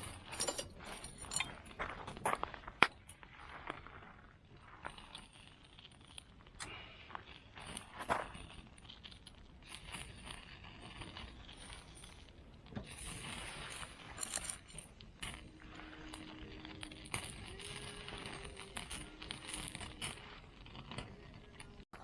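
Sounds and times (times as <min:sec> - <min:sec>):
metallic clinks of cooking gear: 0:00.0 - 0:02.3, 0:07.5 - 0:22.0
faint campfire crackle: 0:00.0 - 0:22.0.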